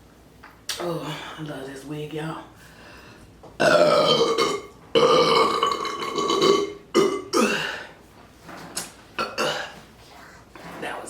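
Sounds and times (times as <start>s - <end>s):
woman burping: 3.6s - 7.9s, 9.2s - 9.8s.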